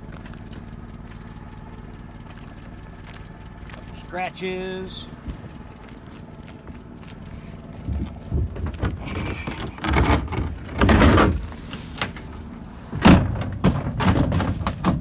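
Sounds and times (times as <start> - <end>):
plastic boat scraping: 7.1 - 15.0
knocks on hollow plastic: 7.8 - 11.4.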